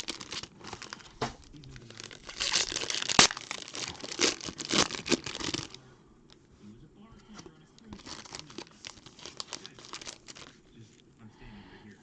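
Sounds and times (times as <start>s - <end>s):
plastic packaging crinkling: 0.0s - 5.8s, 7.3s - 10.6s.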